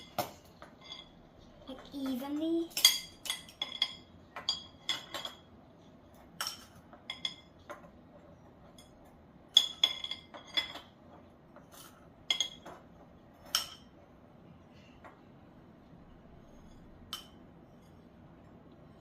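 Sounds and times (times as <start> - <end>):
metal utensil clinking on dish: 0.0 - 1.2, 2.0 - 5.5, 6.2 - 7.9, 8.7 - 10.9, 11.7 - 12.8, 13.4 - 13.9.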